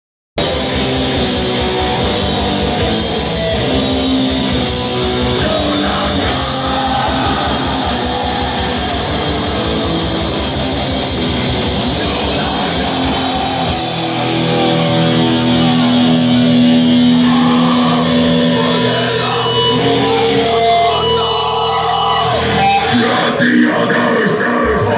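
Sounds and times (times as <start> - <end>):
fast driving drum beat: 0.4 - 18.4
distorted guitars: 0.4 - 24.9.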